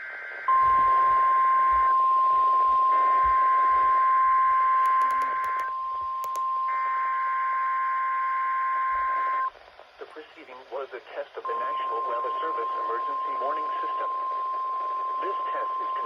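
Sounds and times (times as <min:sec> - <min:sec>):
steady high alarm tone: 0:00.5 - 0:09.4
brief clicks: 0:04.8 - 0:06.4.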